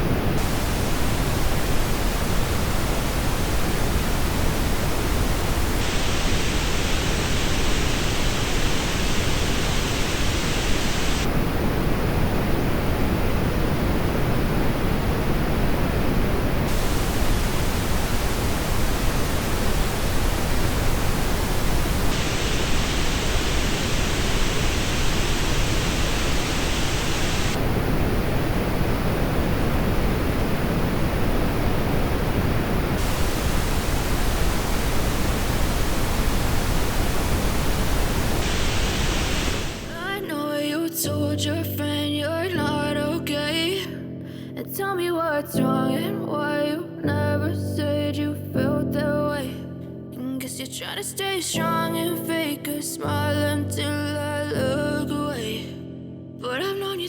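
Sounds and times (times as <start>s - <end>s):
pink noise test signal: 0.0s - 40.4s.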